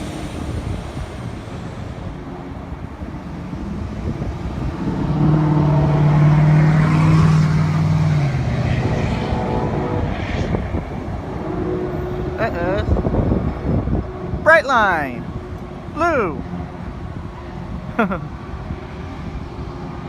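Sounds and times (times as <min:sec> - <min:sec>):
train engine drone: 0:00.0 - 0:06.6.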